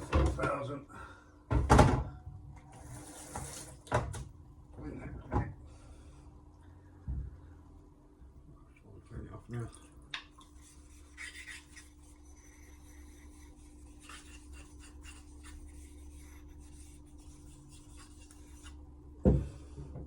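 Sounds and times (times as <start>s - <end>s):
steady low hum: 4.2s - 20.0s
blade rasping on whetstone: 10.6s - 18.8s.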